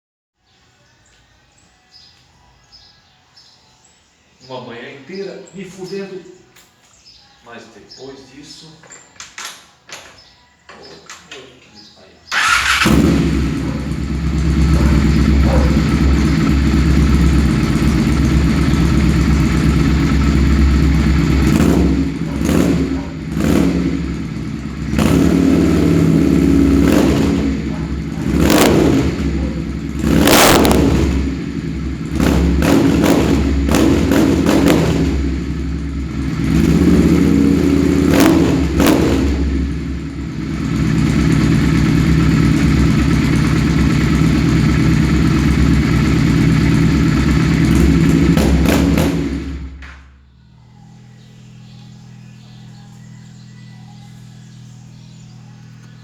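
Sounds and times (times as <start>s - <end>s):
motorcycle engine idling: 11.8s - 56.0s.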